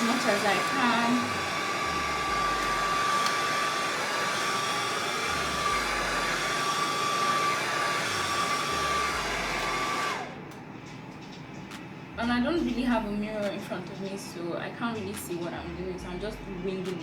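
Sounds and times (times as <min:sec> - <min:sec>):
blow dryer running with high whine: 0:00.0 - 0:10.5.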